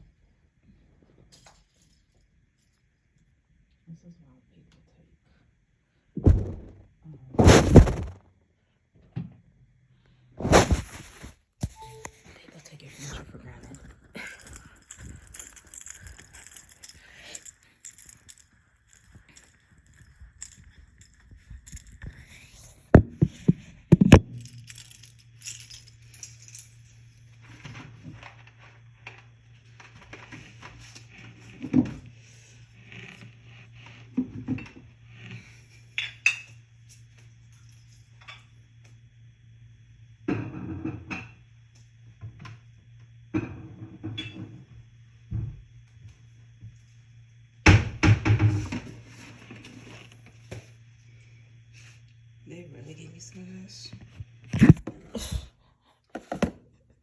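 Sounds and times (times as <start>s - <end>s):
steady low hum: 5.7s - 8.3s, 9.9s - 57.0s
low hum: 6.2s - 8.2s
objects knocking and clinking: 13.8s - 22.3s, 23.0s - 27.3s.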